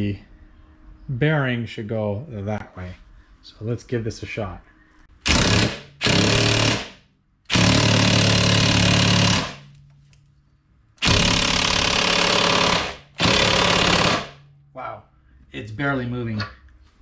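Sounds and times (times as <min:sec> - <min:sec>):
impact gun hammering: 0:05.3 - 0:09.8, 0:11.0 - 0:14.5.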